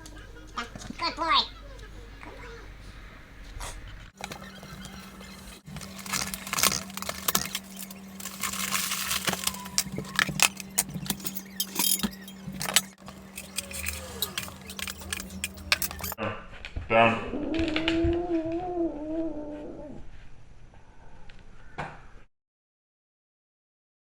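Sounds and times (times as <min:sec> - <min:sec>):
steady low hum: 0:00.0 - 0:16.2
dogs eating from bowl: 0:04.2 - 0:16.2.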